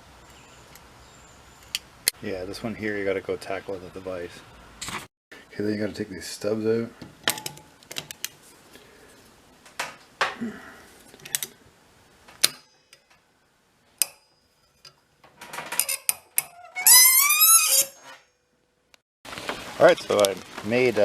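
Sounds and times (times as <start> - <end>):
metal tools clinking: 14.6 - 16.6.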